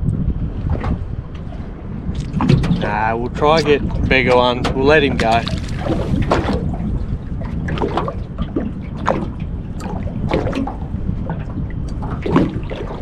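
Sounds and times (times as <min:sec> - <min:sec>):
low wind rumble: 0:00.0 - 0:13.0
water lapping against boat hull: 0:00.0 - 0:13.0.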